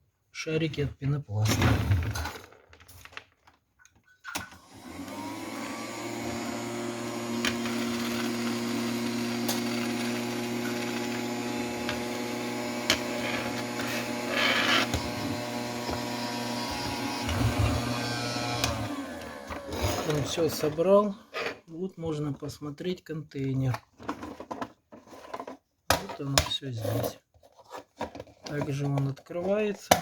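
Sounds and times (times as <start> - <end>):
toy vacuum motor humming: 4.6 - 20.2.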